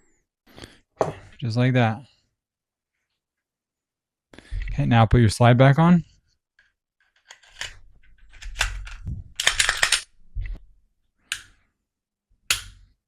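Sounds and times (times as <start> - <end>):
pistol slide snapping: 8.4 - 10.1, 12.5 - 12.8
pistol slide metallic clicks: 12.5 - 12.8.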